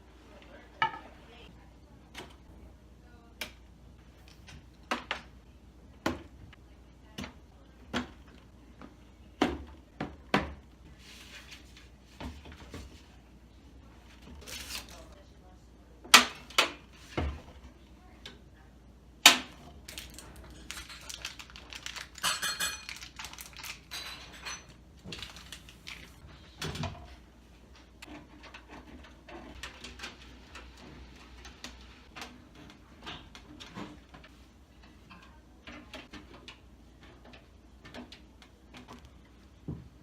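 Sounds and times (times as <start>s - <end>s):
computer parts clattering: 19.9s - 26.0s.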